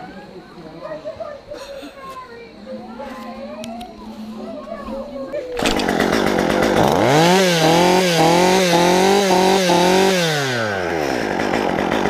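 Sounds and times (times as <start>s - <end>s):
chainsaw revving: 5.6s - 12.0s.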